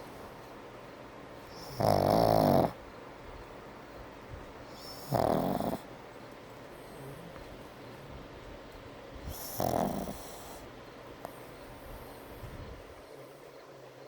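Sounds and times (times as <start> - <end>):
dog snoring: 1.4 - 2.8, 4.7 - 5.9, 6.7 - 8.3, 9.2 - 12.4.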